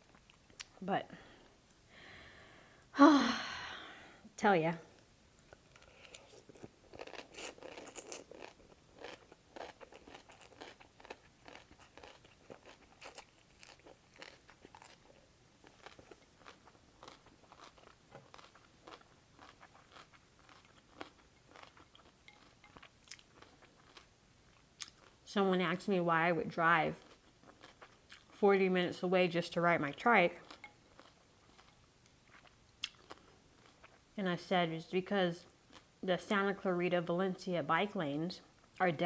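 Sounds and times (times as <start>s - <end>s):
crunching and chewing: 4.9s - 25.2s, 27.0s - 28.4s, 30.4s - 34.0s.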